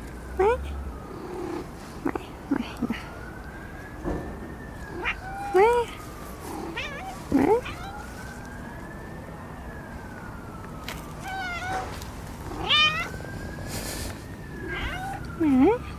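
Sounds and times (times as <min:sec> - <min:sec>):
siren rising and falling: 0:02.7 - 0:15.9
cat meowing: 0:04.9 - 0:05.9, 0:06.5 - 0:08.1, 0:11.2 - 0:13.2, 0:14.6 - 0:15.2.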